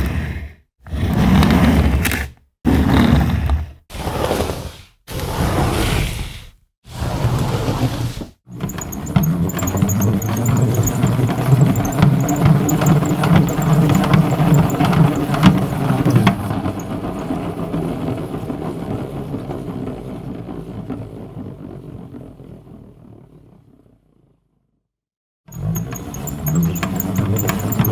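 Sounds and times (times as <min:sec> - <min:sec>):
rattly clicks: 0:08.6 - 0:17.2, 0:25.5 - 0:27.9
vehicle engine rumbling: 0:08.6 - 0:17.2, 0:25.5 - 0:27.9.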